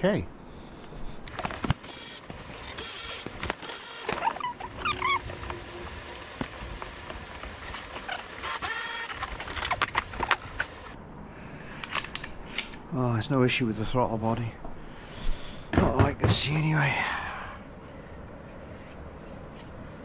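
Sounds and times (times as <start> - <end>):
brief squeak: 4.1 - 5.2.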